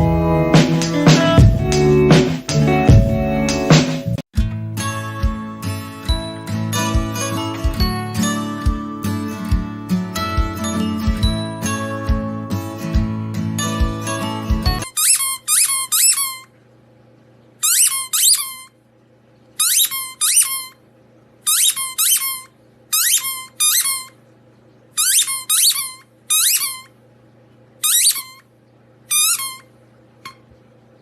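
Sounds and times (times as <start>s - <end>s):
faint steady hum: 8.2s - 31.0s
high falling squeaks: 14.8s - 16.5s, 17.6s - 18.7s, 19.6s - 20.8s, 21.5s - 24.2s, 25.0s - 26.9s, 27.8s - 28.4s, 29.1s - 29.7s.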